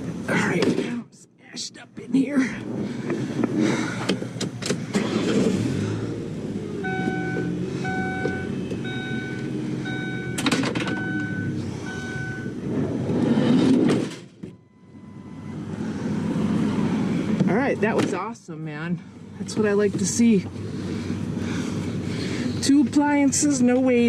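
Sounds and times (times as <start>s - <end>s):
sliding door closing: 4.0s - 5.9s, 12.6s - 14.6s
warning chime beeping: 6.8s - 12.6s.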